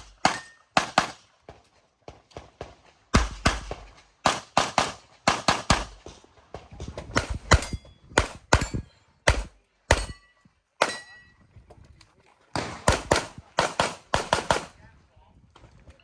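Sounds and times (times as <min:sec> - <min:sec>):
pistol shots: 0:00.0 - 0:01.2, 0:02.4 - 0:06.2, 0:07.2 - 0:10.2, 0:12.6 - 0:14.7
metallic ring: 0:10.0 - 0:11.4.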